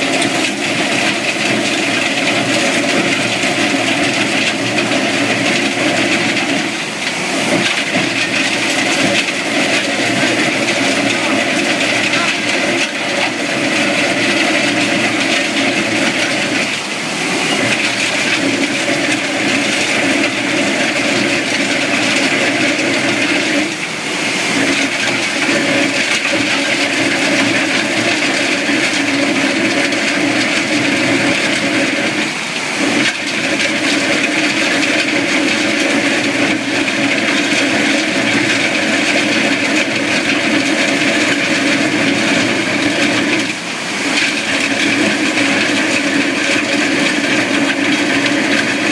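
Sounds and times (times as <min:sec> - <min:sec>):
industrial vacuum: 0:00.0 - 0:48.9
track loader engine: 0:00.0 - 0:48.9
wheel trencher cutting: 0:00.0 - 0:48.9.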